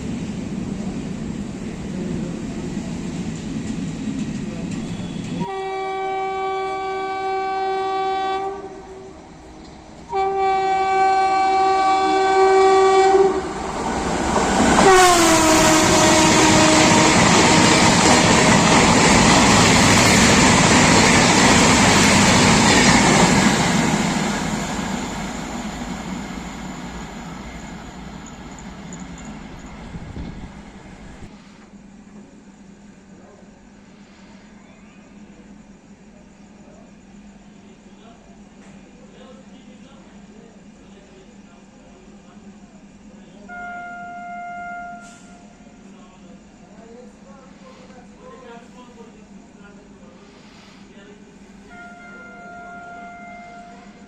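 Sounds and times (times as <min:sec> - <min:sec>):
train rushing past: 0:00.0 - 0:31.9
train horn blasts: 0:04.8 - 0:09.3, 0:10.1 - 0:13.6, 0:14.7 - 0:18.2, 0:43.5 - 0:45.8, 0:51.6 - 0:54.0.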